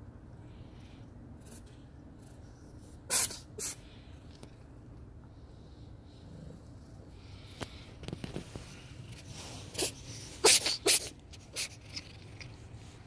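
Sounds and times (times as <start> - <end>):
cat sneezing: 3.0 - 3.9, 9.6 - 12.0.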